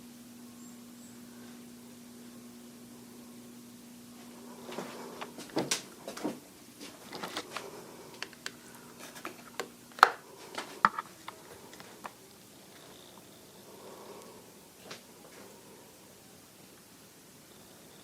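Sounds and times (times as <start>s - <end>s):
electric fan motor humming: 0.0s - 18.0s.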